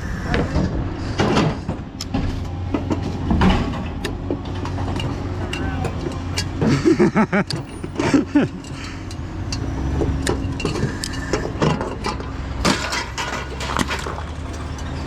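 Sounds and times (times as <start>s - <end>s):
vehicle engine running: 0.0s - 15.0s
indistinct voice: 5.4s - 6.4s.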